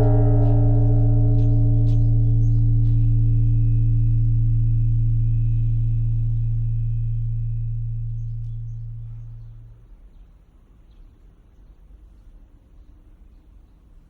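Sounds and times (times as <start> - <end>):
temple bell ringing with deep hum: 0.0 - 9.9.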